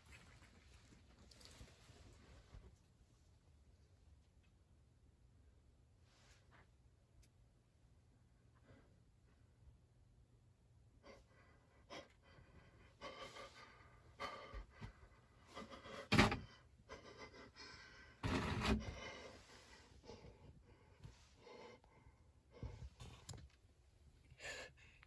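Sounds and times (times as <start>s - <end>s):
person breathing hard and gasping: 11.1s - 22.1s, 24.4s - 25.0s.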